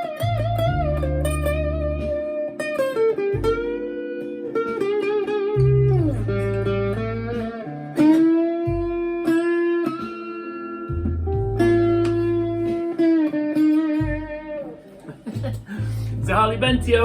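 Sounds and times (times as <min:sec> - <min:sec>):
distorted electric guitar lead: 0:00.0 - 0:17.0.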